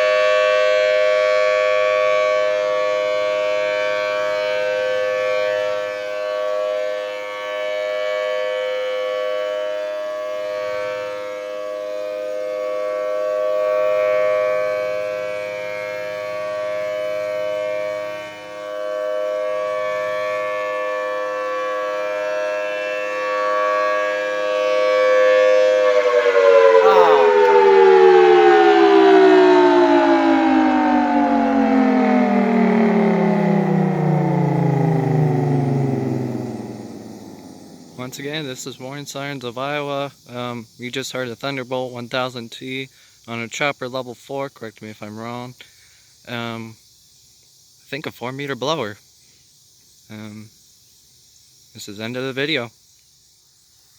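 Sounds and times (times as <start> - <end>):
outdoor warning siren: 0.0 - 39.0.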